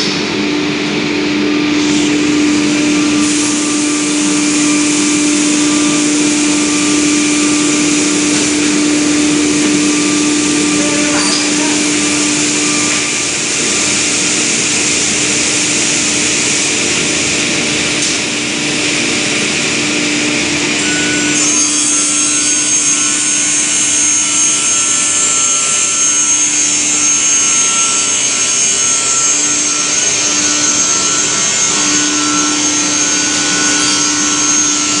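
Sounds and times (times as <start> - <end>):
panel saw cutting wood: 20.8 - 35.0.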